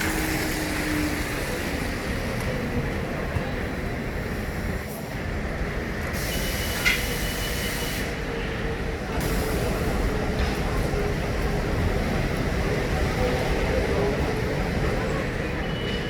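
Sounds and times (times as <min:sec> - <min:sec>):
traffic rumble: 0:00.0 - 0:06.5.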